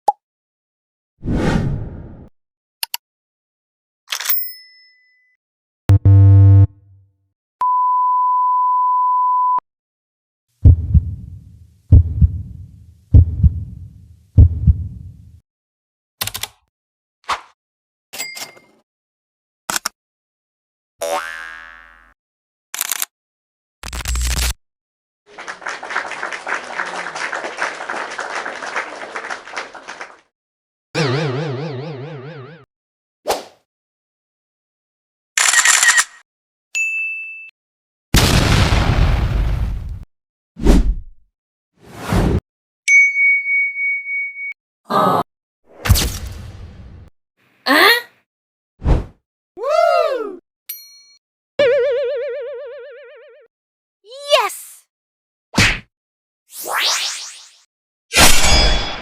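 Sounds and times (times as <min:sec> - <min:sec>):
censor beep: 0:07.6 - 0:09.6
heartbeat thumps: 0:10.6 - 0:15.3
hands clapping: 0:25.3 - 0:30.3
loud warbling tone: 0:31.0 - 0:32.6.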